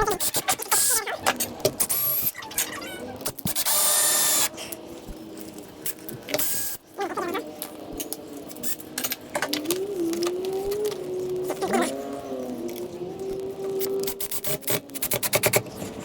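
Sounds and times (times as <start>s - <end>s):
power drill driving a screw: 1.8s - 2.3s, 3.4s - 4.5s.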